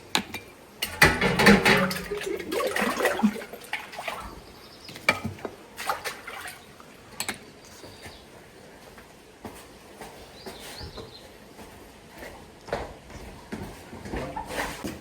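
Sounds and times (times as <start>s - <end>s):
knocks and clatters: 0.8s - 2.3s
water rushing: 0.8s - 4.5s.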